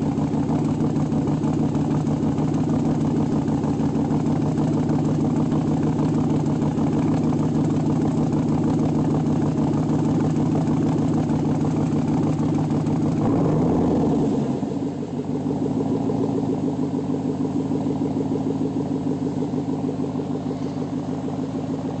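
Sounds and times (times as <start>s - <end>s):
misfiring engine pulsing: 0.1s - 20.1s.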